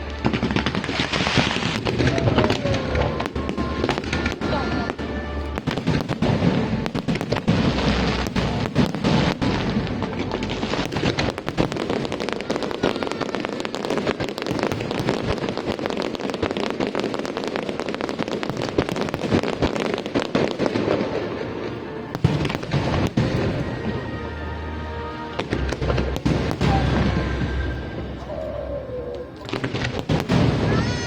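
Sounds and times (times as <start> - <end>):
music: 0.0 - 16.3, 19.2 - 31.0
fireworks crackling and popping: 0.0 - 31.0
sharp firework bang: 25.6 - 27.5, 29.6 - 31.0.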